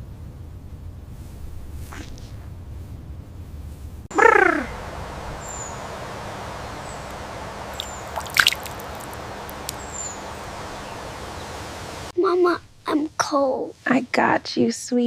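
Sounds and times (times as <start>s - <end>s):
steady background hiss: 0.0s - 15.0s
animal cry sliding downward: 4.1s - 5.7s
faint high bird chirps: 4.2s - 12.1s
sharp crackle: 4.7s - 12.1s.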